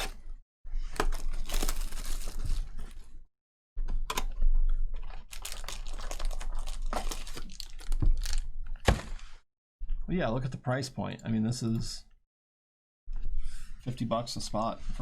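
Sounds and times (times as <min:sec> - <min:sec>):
foil wrapper crinkling: 0:00.8 - 0:03.2, 0:05.3 - 0:09.3.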